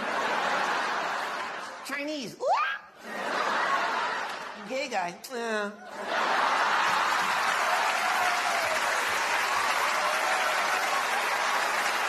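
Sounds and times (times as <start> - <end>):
audience applause: 6.0 - 12.0.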